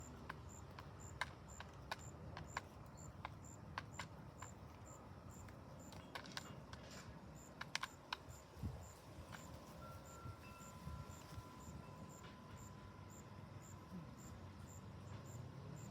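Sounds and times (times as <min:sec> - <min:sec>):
pigeons pecking seed: 0:00.0 - 0:10.1.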